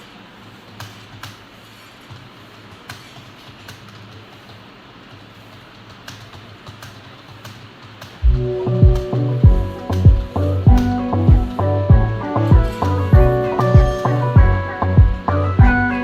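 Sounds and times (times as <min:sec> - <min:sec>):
computer keyboard typing: 0:05.8 - 0:08.2
low steady hum: 0:08.2 - 0:16.0.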